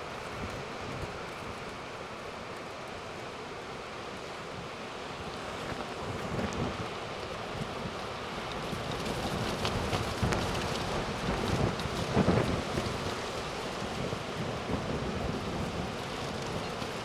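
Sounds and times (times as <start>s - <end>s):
surf washing: 0.0s - 17.0s
storm wind buffeting microphone: 4.2s - 17.0s.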